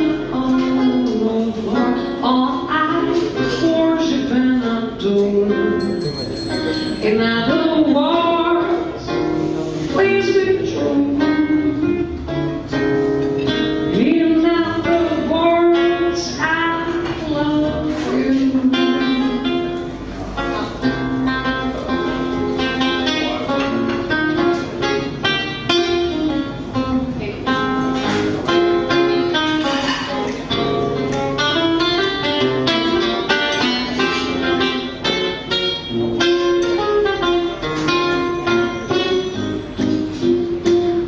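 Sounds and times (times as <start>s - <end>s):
woman singing: 0.0s - 5.8s, 7.0s - 8.9s, 9.9s - 12.0s, 13.9s - 19.6s
acoustic guitar plucking: 0.0s - 41.0s.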